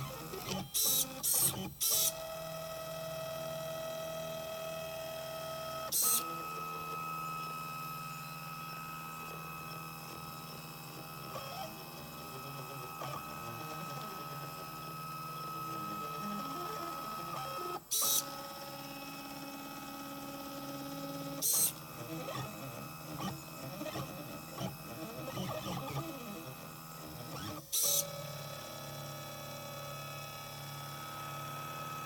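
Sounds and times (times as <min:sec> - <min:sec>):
stepper motors whining: 0:00.0 - 0:32.0.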